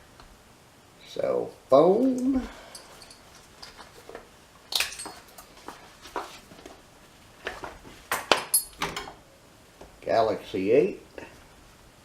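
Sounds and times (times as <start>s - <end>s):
metallic clink: 2.7s - 3.3s.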